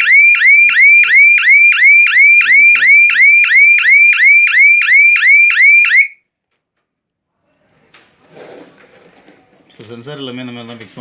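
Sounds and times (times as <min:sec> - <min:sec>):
alarm siren whooping: 0:00.0 - 0:06.2.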